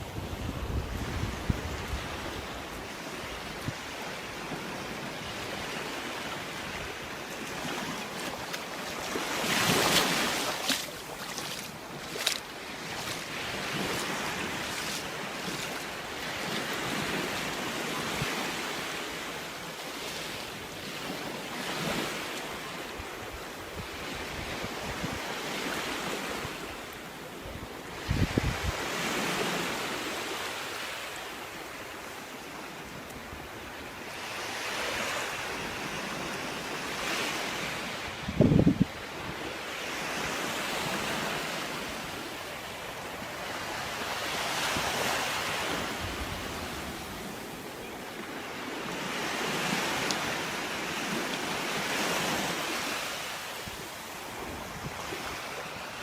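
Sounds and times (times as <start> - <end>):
wind buffeting microphone: 0.0 - 2.7, 28.0 - 28.9, 38.1 - 39.5
waves washing onto beach: 0.0 - 56.0.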